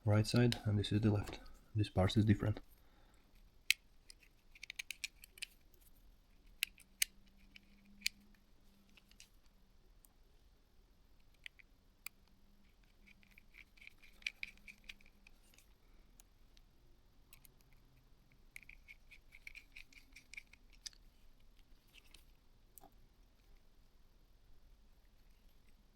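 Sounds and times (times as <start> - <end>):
small tools clicking and scratching: 3.3 - 9.5, 11.2 - 16.3, 17.3 - 23.6.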